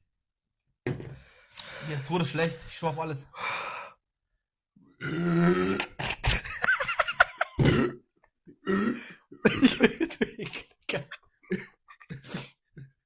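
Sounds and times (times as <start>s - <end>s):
men clearing their throats: 5.0s - 6.2s, 7.6s - 8.0s, 8.6s - 9.8s
men burping: 5.0s - 6.4s, 7.4s - 11.2s.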